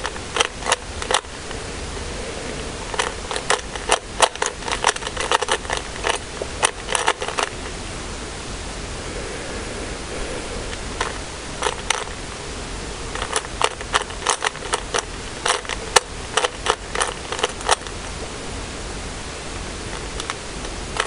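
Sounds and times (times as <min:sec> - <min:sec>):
steady hiss: 0:00.0 - 0:21.0
plastic cube clicks: 0:02.9 - 0:07.5, 0:13.2 - 0:17.9.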